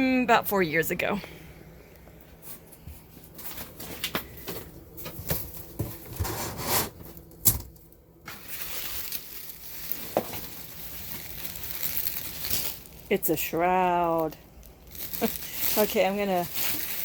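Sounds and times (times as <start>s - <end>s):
cardboard and plastic rustling: 2.3s - 17.0s.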